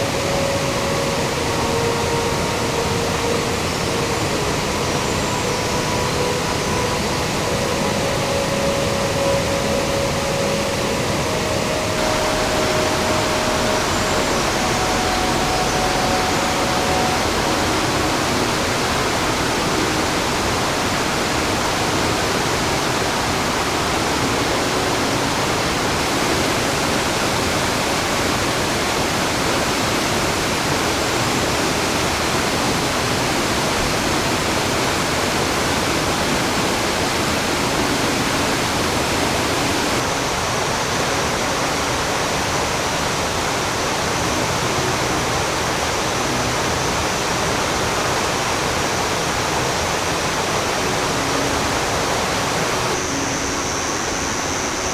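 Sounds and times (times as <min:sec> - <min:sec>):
stream rushing over rapids: 0:00.0 - 0:54.9.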